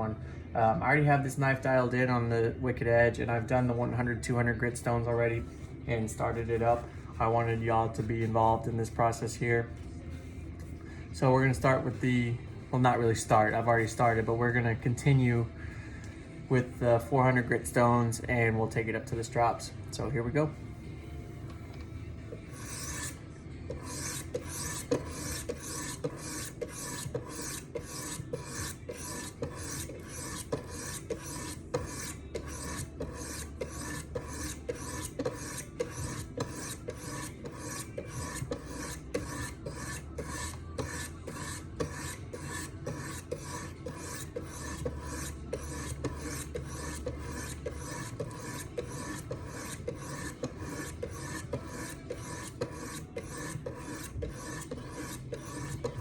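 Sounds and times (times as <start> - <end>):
sharpening stones scraping knife blade: 22.4 - 56.0.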